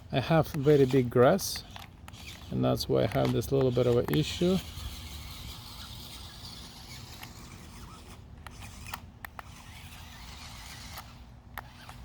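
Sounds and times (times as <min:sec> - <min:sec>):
wheels churning through grass: 0:00.0 - 0:08.9
toy car electric motors whirring: 0:00.0 - 0:12.0.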